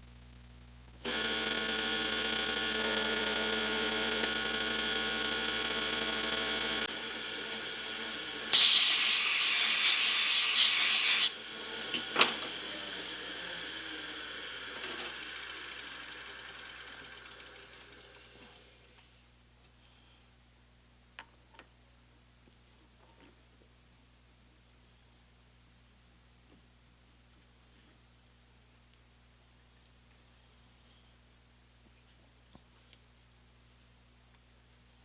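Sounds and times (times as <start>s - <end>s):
compressed air hissing: 8.5s - 11.4s
metal lathe running: 8.5s - 11.4s.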